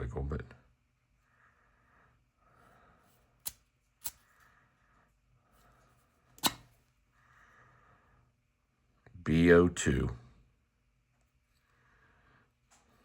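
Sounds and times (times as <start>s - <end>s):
lighter metal clicks: 3.4s - 4.2s, 6.4s - 6.7s.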